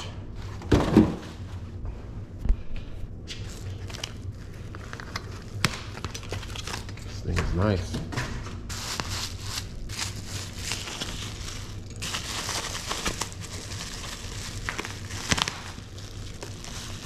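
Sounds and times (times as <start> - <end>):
packing material crinkling: 3.4 - 7.2, 8.6 - 17.0.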